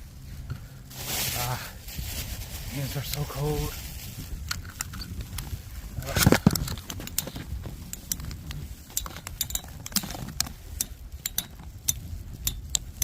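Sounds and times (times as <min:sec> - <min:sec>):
low wind rumble: 0:00.0 - 0:13.0.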